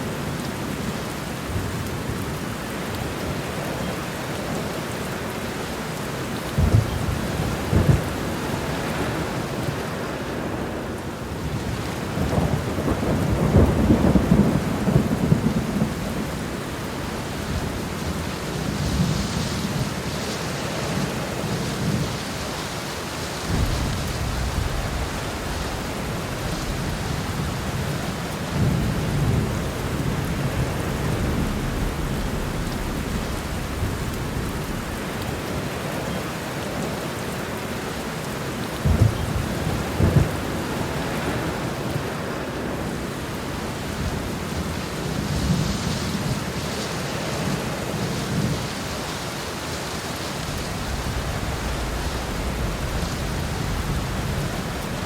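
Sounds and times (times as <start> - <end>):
heavy rain falling: 0.0 - 55.0
thunder rumbling: 6.4 - 10.7, 11.4 - 22.1, 23.4 - 37.1, 38.7 - 46.7, 50.5 - 55.0
sharp thunder claps: 6.6 - 8.4, 23.5 - 28.0, 28.6 - 35.7.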